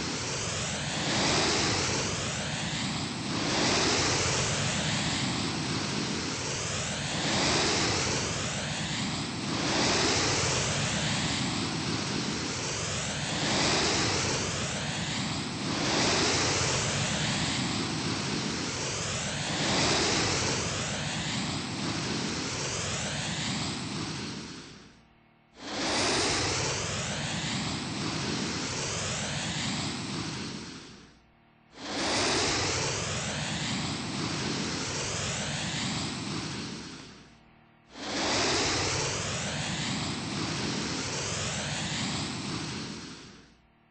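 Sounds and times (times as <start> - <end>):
ceiling fan air rushing: 0.0 - 43.9.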